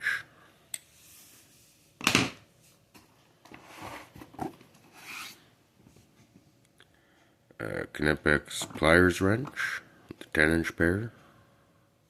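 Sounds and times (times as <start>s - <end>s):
tools rubbing and rustling: 3.5s - 5.5s.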